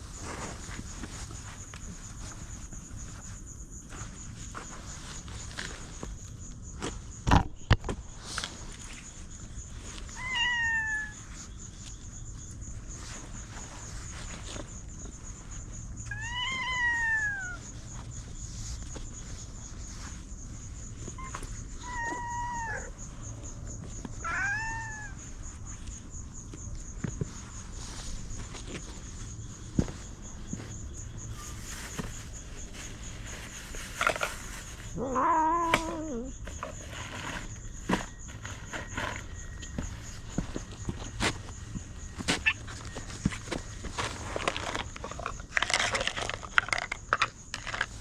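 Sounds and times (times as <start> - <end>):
kitten meowing: 24.2 - 25.2, 35.0 - 36.3.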